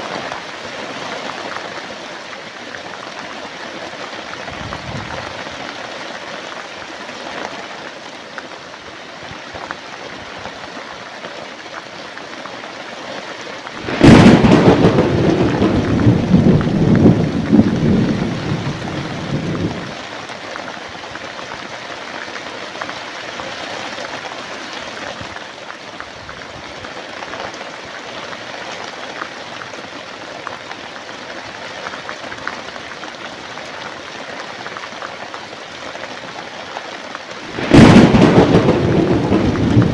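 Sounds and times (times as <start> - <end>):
steady rain falling: 0.0 - 39.9
thunderclap: 13.8 - 20.0, 37.5 - 39.9.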